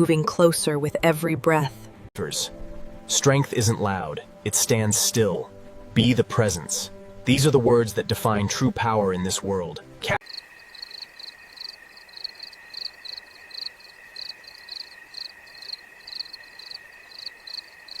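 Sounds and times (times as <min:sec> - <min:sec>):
insects chirping in pulses: 0:10.2 - 0:18.0.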